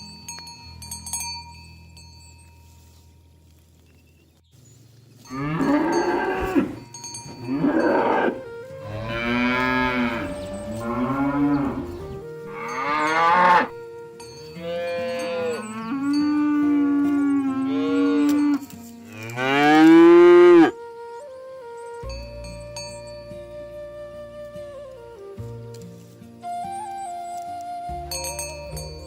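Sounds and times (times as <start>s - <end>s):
cattle mooing: 5.3s - 13.7s.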